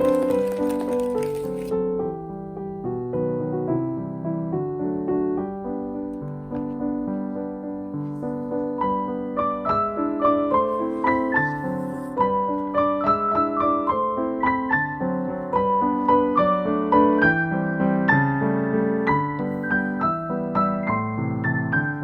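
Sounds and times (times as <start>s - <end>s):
gentle piano melody: 0.0s - 22.0s.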